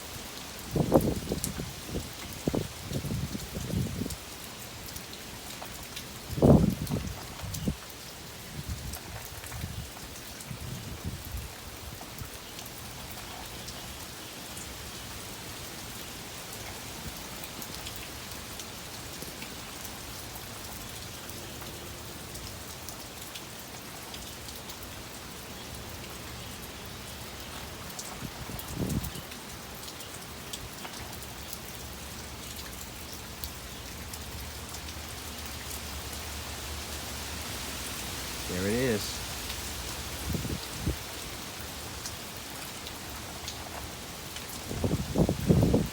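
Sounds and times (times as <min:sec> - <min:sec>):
steady rain falling: 0:00.0 - 0:45.9
wind buffeting microphone: 0:06.4 - 0:07.8, 0:40.1 - 0:41.0, 0:44.6 - 0:45.9.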